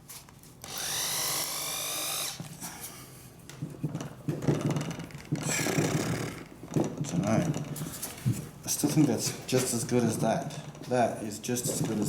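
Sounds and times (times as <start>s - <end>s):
power drill motor whining: 0.6s - 2.5s.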